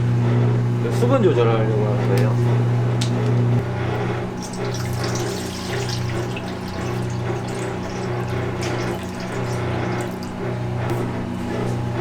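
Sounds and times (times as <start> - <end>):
kitchen machine motor hum: 0.0 - 12.0
water running and splashing: 4.4 - 11.0.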